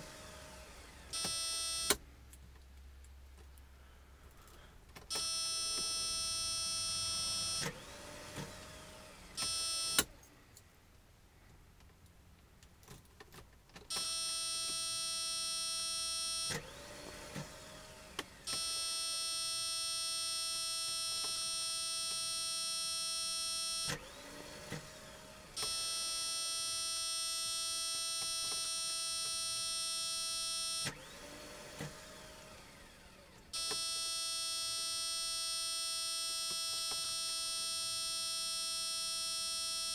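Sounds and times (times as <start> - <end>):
small motor whirring: 5.2 - 10.1, 16.2 - 19.6, 23.1 - 28.8, 30.6 - 35.1.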